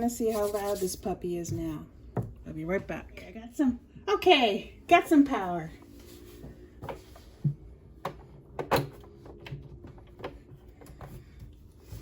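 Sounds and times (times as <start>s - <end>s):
knocks and clicks of handling: 6.8s - 11.6s.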